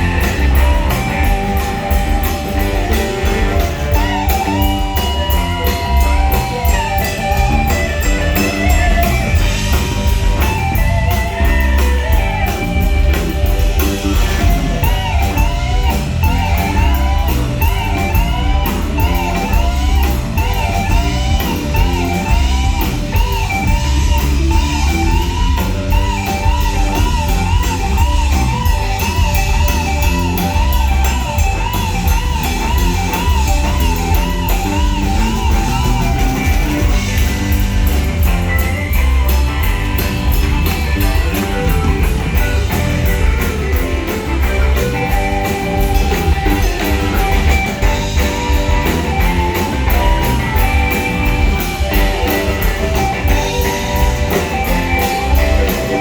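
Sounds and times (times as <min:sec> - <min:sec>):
bass guitar: 0:00.0 - 0:56.0
drum kit with cymbals: 0:00.0 - 0:56.0
electric lead guitar runs: 0:00.0 - 0:56.0.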